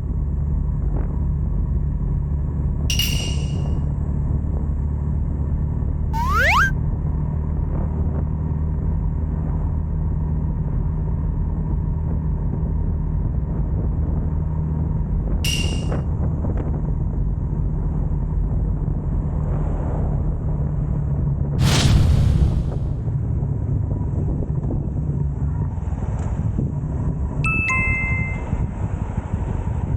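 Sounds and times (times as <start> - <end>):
short sharp noise: 6.2 - 6.7, 21.6 - 23.2.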